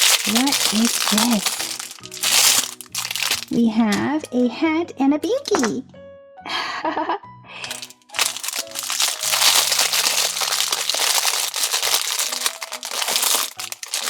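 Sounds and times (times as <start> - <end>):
plastic wrapping crinkling: 0.0 - 3.6, 7.6 - 14.0
light background music: 0.0 - 14.0.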